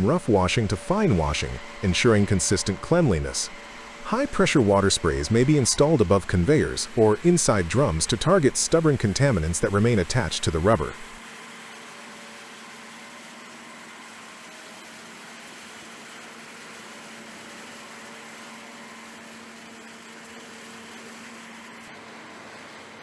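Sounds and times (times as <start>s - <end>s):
machinery hum: 0.0s - 11.2s.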